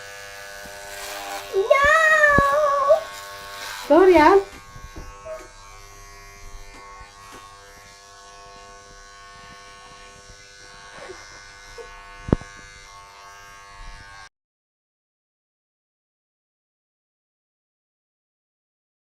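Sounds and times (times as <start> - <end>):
small electric motor humming: 0.0 - 14.3.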